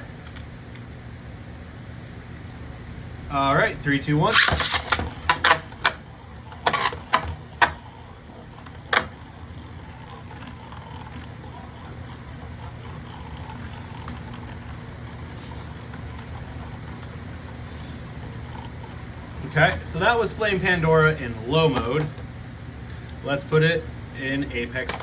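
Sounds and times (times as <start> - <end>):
spinning top whirring: 0.0 - 0.5, 3.3 - 22.3, 24.2 - 25.0
spinning top clacking on plastic: 4.2 - 22.2, 24.7 - 25.0.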